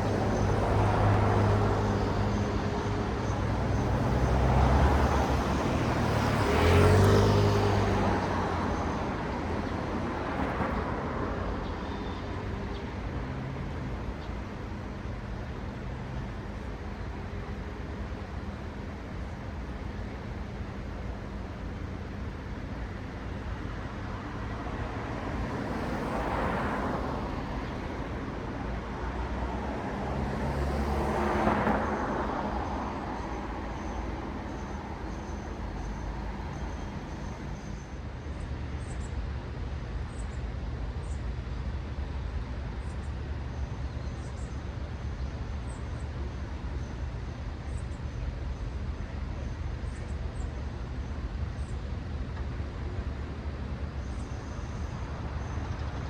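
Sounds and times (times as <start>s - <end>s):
cars passing: 0.0s - 11.7s, 21.7s - 38.4s
low traffic rumble: 0.0s - 56.0s.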